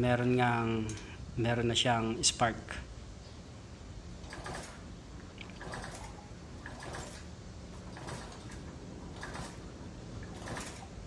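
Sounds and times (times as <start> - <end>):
soft mechanical rattles: 4.1 - 11.0.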